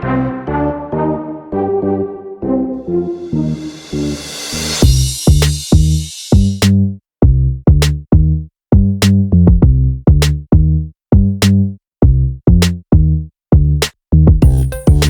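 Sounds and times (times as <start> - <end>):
electronic music with drum-machine beat: 14.4 - 15.0.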